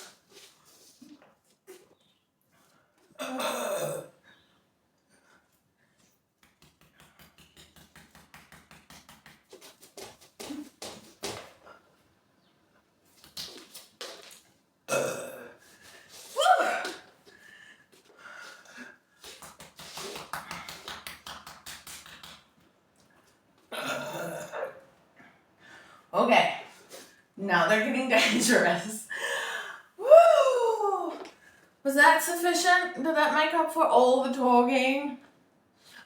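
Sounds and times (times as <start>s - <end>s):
woman burping: 3.2s - 4.2s, 14.9s - 15.6s, 23.7s - 24.8s.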